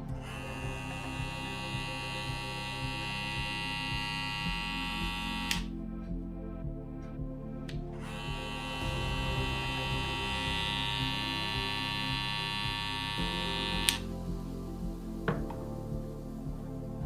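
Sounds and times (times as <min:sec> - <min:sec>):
electric hair clipper humming: 0:00.2 - 0:05.7, 0:08.0 - 0:14.1
hair clipper switch click: 0:05.3 - 0:05.7, 0:13.5 - 0:14.0.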